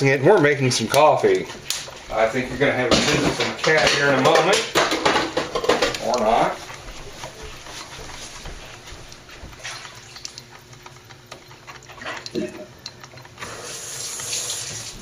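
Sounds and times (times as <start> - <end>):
coffee maker gurgling: 0.0 - 15.0
steam hissing: 13.4 - 15.0.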